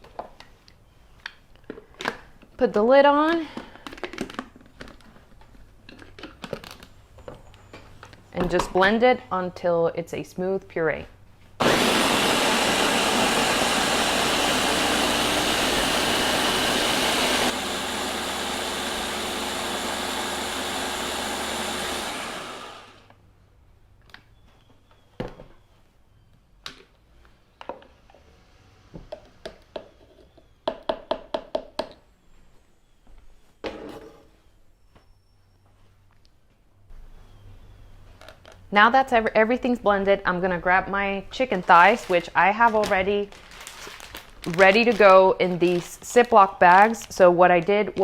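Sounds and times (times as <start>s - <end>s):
blender running: 11.6s - 23.1s.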